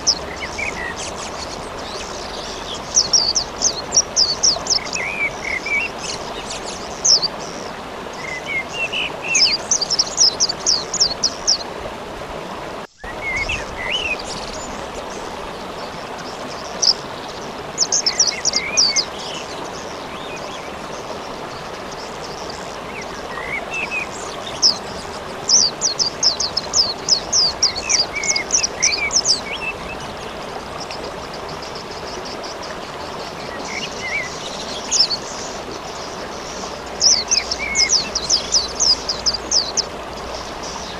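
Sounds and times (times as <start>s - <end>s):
songbird trilling and chirping: 0.0s - 7.5s, 30.9s - 40.9s.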